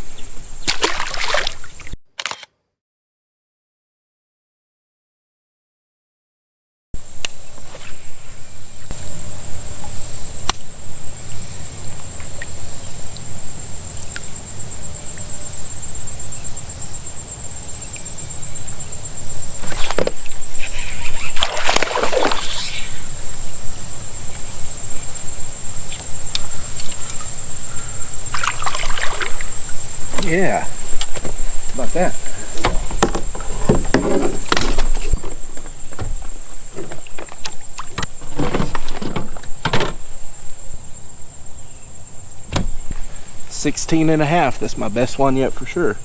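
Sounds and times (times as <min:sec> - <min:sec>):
water sloshing and splashing: 0:00.6 - 0:02.0, 0:18.0 - 0:24.1, 0:26.3 - 0:40.4.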